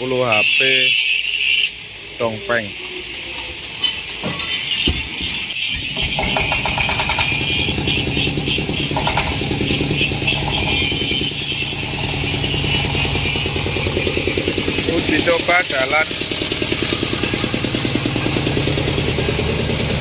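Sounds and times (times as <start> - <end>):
steady hiss: 0.0 - 18.4
diesel engine knocking: 5.9 - 20.0.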